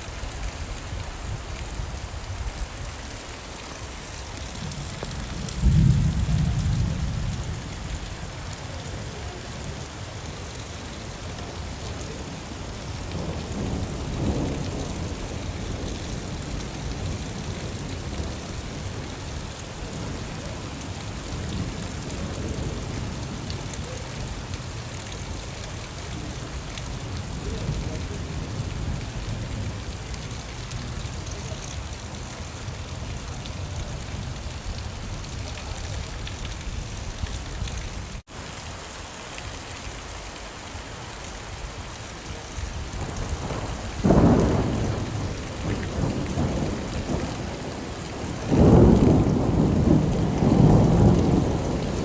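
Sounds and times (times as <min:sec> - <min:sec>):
steady rain: 0:00.0 - 0:52.0
thunder rumbling: 0:04.4 - 0:08.1, 0:42.6 - 0:52.0.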